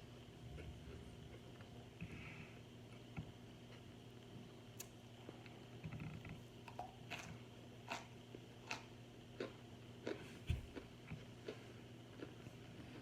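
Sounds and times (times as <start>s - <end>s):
low steady hum: 0.0s - 13.0s
crisp crunching and chewing: 6.7s - 12.8s.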